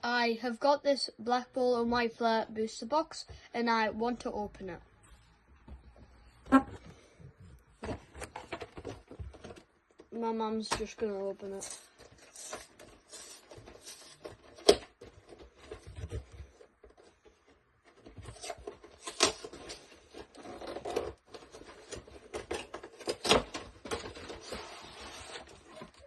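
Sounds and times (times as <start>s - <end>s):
cardboard and plastic rustling: 5.7s - 26.0s.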